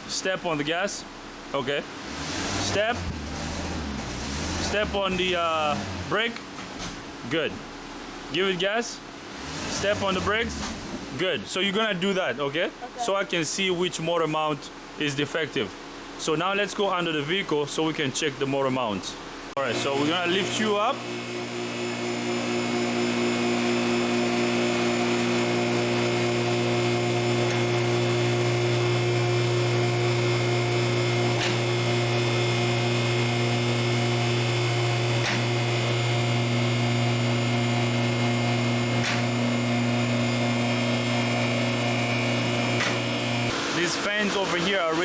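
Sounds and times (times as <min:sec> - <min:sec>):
hydraulic pump motor humming: 0:02.0 - 0:07.2, 0:09.2 - 0:11.3, 0:19.6 - 0:45.0.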